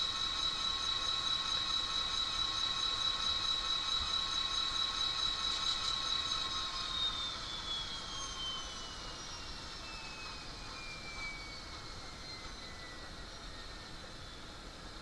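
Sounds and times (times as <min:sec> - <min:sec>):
diesel locomotive whine from small speaker: 0:00.0 - 0:15.0.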